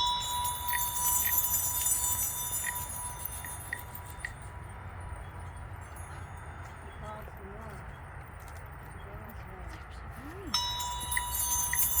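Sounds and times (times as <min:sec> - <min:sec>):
metal chime ringing: 0:00.0 - 0:04.8, 0:10.5 - 0:12.0.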